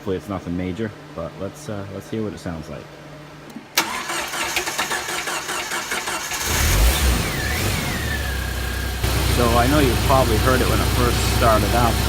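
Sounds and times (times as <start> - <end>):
engine starter cranking: 3.8 - 8.0
engine whine: 6.0 - 12.0
car engine idling: 6.1 - 12.0.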